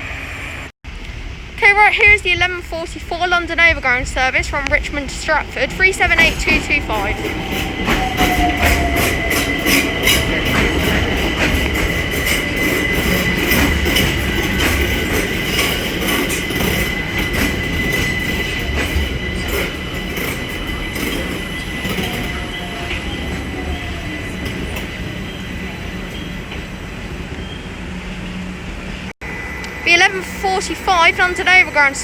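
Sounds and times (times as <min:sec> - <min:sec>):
train wheels clicking over rail joints: 0:03.1 - 0:26.7
high wheel squeal: 0:05.9 - 0:28.6.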